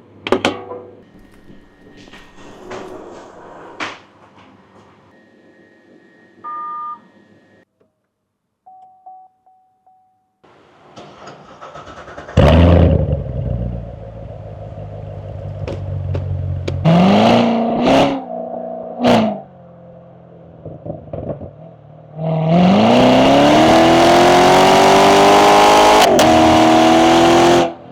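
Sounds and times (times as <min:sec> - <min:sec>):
car engine starting: 0:10.9 - 0:21.9, 0:22.5 - 0:27.9
car engine idling: 0:11.0 - 0:16.9
car engine revving: 0:11.1 - 0:27.9.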